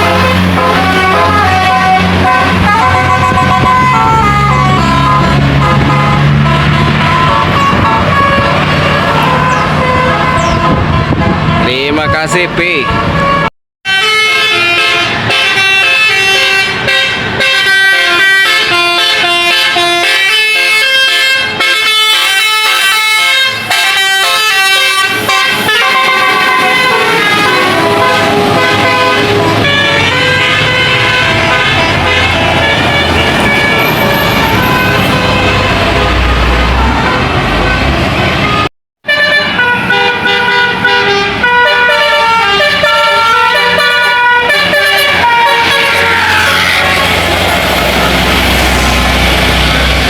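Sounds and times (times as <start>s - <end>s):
diesel bus engine running: 0.0s - 11.8s, 21.8s - 38.7s, 39.3s - 50.0s
multi-tone bus horn melody: 0.0s - 50.0s.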